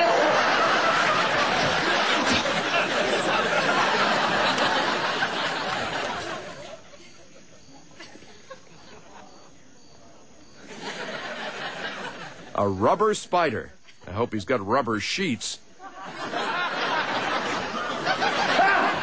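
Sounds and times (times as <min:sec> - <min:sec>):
loud laughter: 0:00.0 - 0:09.5, 0:10.6 - 0:12.5, 0:15.8 - 0:19.0
voices: 0:00.0 - 0:19.0.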